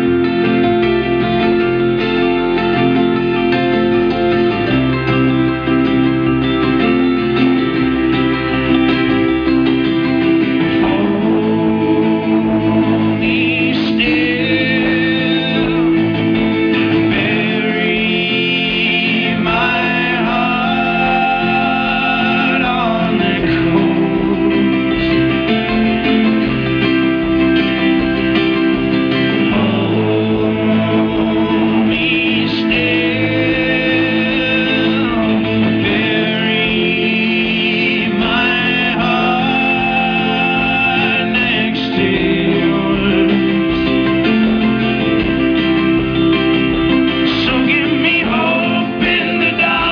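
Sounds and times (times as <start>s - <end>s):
acoustic guitars strumming: 0.0s - 49.9s
people singing: 10.3s - 26.6s, 28.7s - 45.0s, 47.2s - 49.9s.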